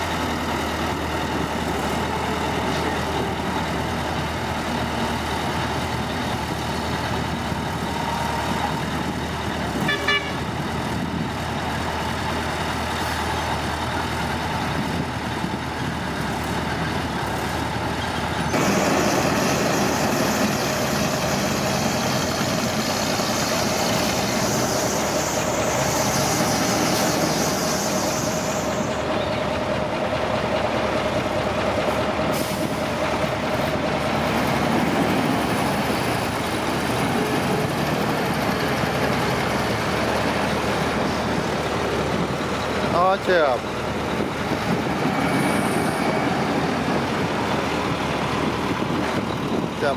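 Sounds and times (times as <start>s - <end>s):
construction machinery engines: 0.0s - 49.9s.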